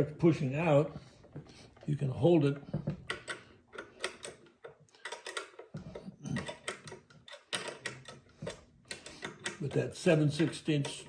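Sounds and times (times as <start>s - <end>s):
small metallic clicks and taps: 2.6s - 11.0s.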